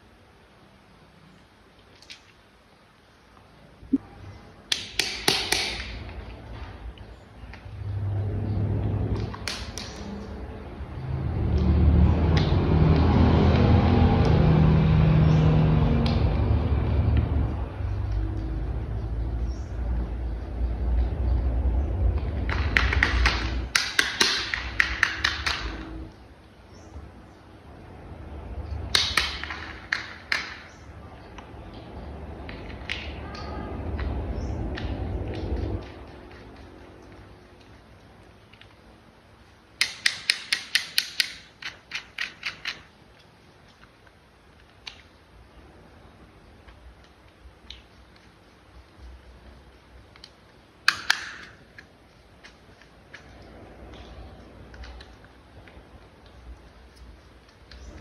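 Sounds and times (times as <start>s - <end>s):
low rumble: 6.2s - 23.7s
plastic toy parts clicking together: 39.8s - 42.9s.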